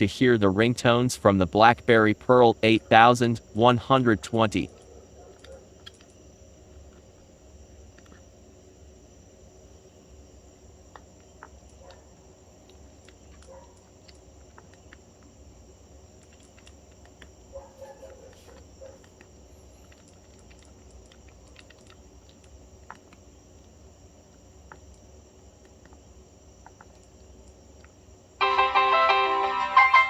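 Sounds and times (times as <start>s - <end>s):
small clicks: 4.6s - 7.2s, 7.9s - 8.3s, 10.9s - 15.4s, 16.2s - 28.0s.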